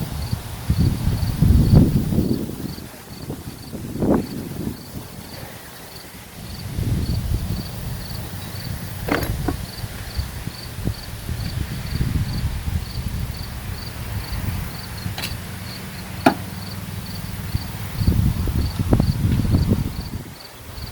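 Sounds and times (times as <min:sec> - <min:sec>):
cricket chirping: 0:00.2 - 0:20.9
sharp clicks and knocks: 0:09.1 - 0:09.6, 0:15.2 - 0:15.4, 0:16.2 - 0:16.6.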